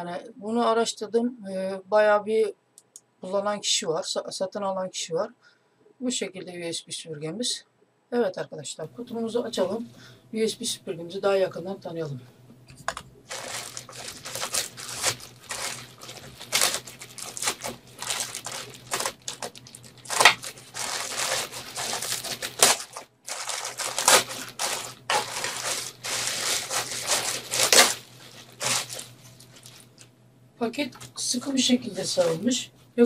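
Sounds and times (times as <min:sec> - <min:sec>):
package wrapping tearing and crinkling: 0:13.3 - 0:30.1.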